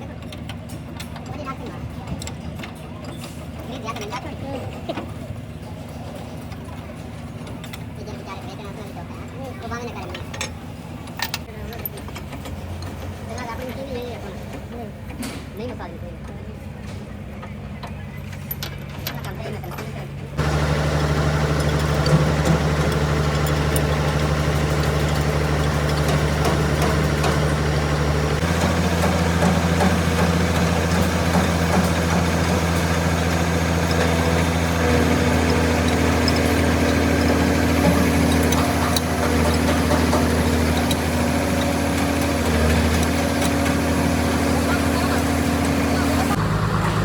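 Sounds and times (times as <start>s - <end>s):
excavator engine humming: 14.0s - 47.0s.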